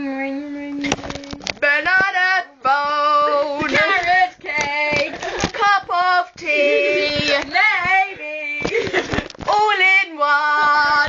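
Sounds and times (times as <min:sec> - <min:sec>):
woman singing loudly: 0:01.6 - 0:08.7.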